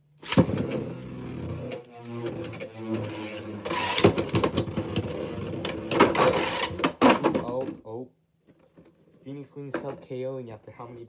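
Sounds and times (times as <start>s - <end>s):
spinning tops whirring: 0.2s - 6.8s.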